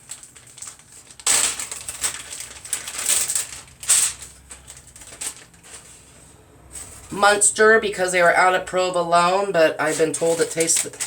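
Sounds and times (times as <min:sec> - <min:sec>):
plastic packaging crinkling: 0:00.0 - 0:06.0, 0:09.7 - 0:11.0.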